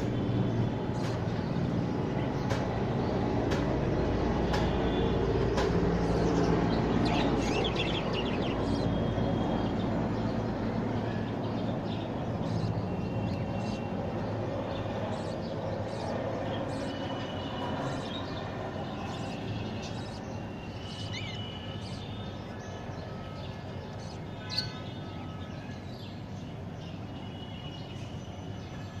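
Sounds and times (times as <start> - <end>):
budgerigars chirping: 6.0 - 9.0, 12.0 - 14.0, 14.8 - 22.4.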